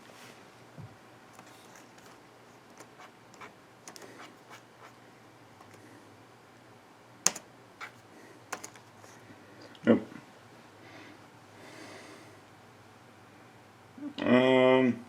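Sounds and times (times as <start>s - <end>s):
computer keys clicking: 8.5s - 8.8s.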